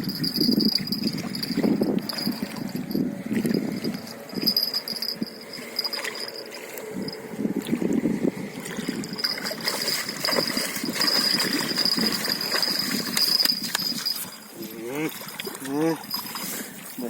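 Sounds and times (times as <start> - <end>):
steady high-pitched tone: 0.0 - 7.5
water splashing and gurgling: 0.0 - 17.0.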